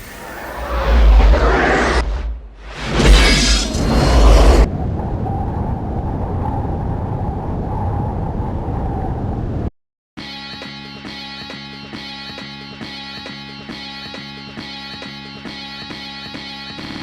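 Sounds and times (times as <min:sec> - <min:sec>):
rising whoosh: 0:00.0 - 0:07.2
low rumble: 0:00.0 - 0:09.6
deep boom: 0:00.6 - 0:07.2.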